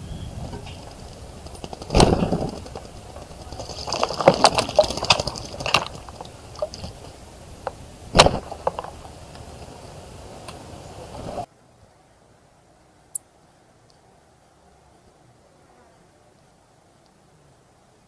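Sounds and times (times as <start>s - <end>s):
birds splashing in water: 0.0s - 11.5s
wings fluttering: 0.0s - 11.5s.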